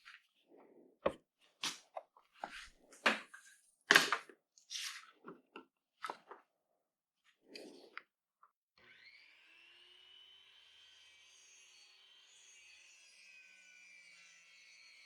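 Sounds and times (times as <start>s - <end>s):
hands handling tools and wood: 1.0s - 6.4s.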